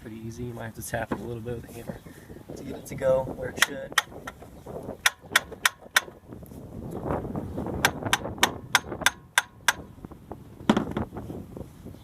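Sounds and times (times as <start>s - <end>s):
metallic taps and knocks: 3.6s - 6.2s, 7.8s - 9.9s.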